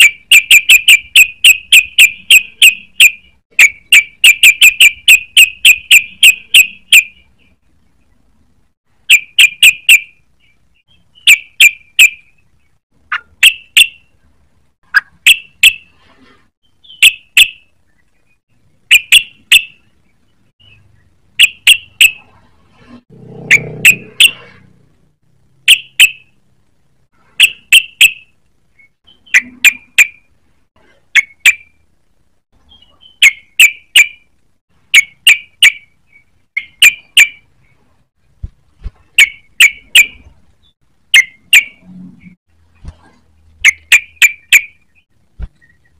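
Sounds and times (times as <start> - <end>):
bird singing sharp notes: 0.0 - 7.6, 23.5 - 24.7.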